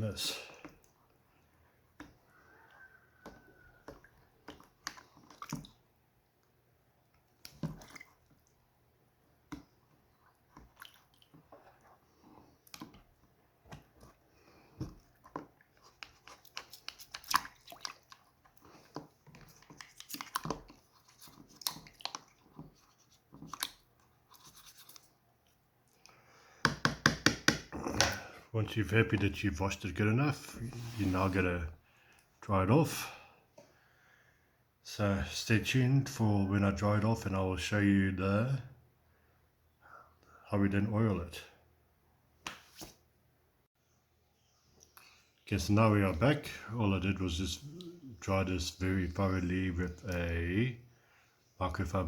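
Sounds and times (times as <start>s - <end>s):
toothbrush scrubbing a knife: 15.7s - 25.2s.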